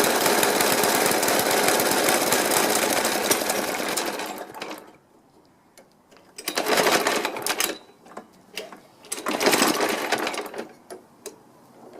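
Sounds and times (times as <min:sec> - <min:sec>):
lawnmower engine running unevenly: 0:00.0 - 0:05.0, 0:09.1 - 0:10.7.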